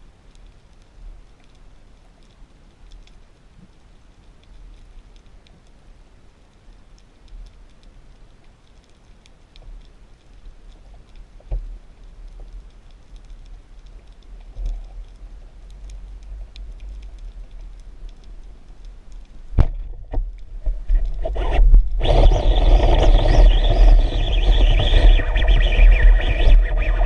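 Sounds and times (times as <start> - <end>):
underwater crackling ticks: 0.0 - 27.0
low underwater rumble: 10.9 - 27.0.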